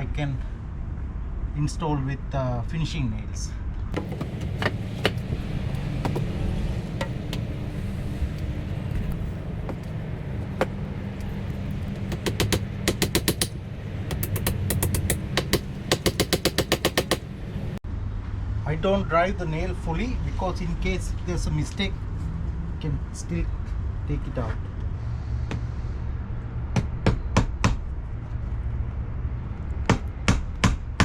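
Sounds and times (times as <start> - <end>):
steady low rumble: 3.6 - 19.5
hammer tapping nails: 4.0 - 6.4, 7.0 - 7.6, 9.7 - 17.3.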